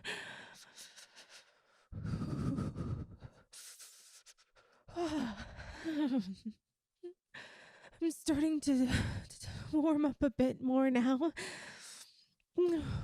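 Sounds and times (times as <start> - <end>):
woman breathing: 0.0 - 6.3, 7.3 - 8.0, 11.4 - 13.0.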